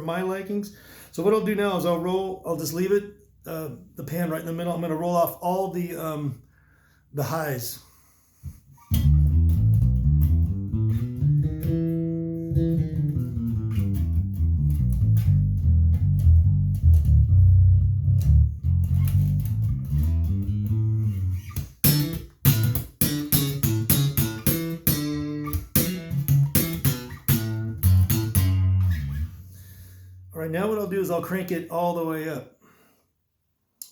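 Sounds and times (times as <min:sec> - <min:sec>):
deep electric bass notes: 0:08.9 - 0:31.6.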